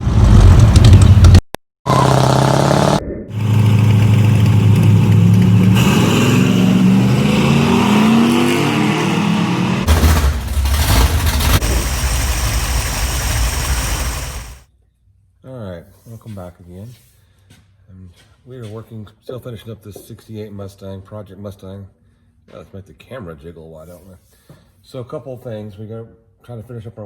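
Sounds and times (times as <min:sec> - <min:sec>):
car engine revving: 0:00.0 - 0:14.6.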